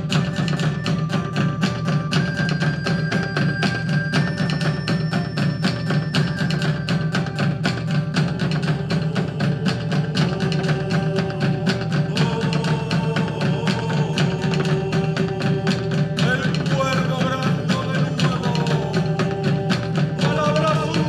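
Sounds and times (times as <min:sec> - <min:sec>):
live band playing instrumental: 0:00.0 - 0:09.0.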